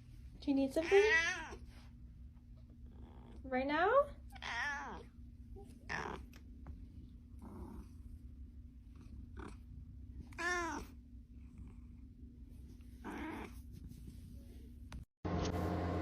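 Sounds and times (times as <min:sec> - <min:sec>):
cat meowing: 0:04.4 - 0:05.1, 0:10.3 - 0:10.9
cat purring: 0:05.6 - 0:14.6.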